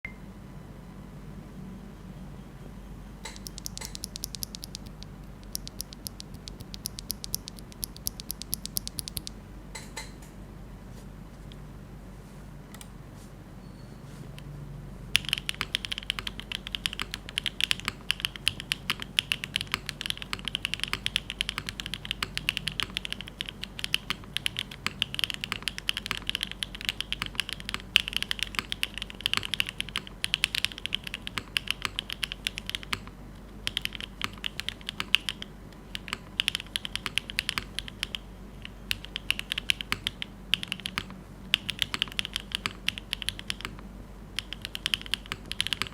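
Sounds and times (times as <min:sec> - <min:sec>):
keyboard key clacks: 0:03.2 - 0:10.1.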